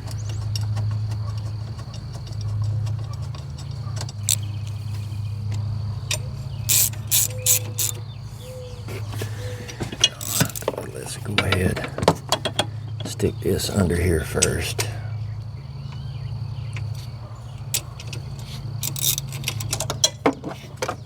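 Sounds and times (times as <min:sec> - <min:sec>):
steady low hum: 0:00.0 - 0:21.0
ratchet wrench clicking: 0:04.1 - 0:04.8, 0:05.5 - 0:08.0, 0:09.6 - 0:10.8, 0:17.7 - 0:20.2.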